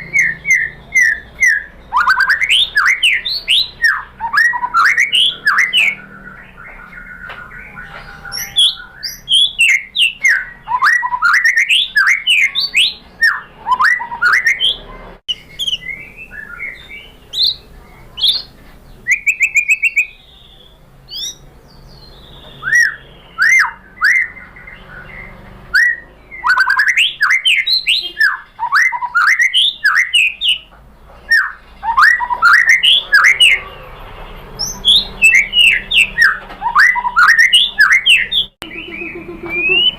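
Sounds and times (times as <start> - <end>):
bird singing whistled notes: 0.0 - 30.7, 31.3 - 33.7, 34.6 - 39.9.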